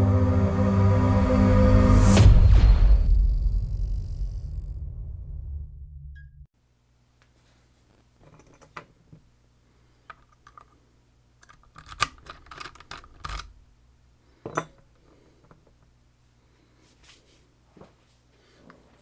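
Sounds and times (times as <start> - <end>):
padlock and lock picks clicking: 11.4 - 13.6.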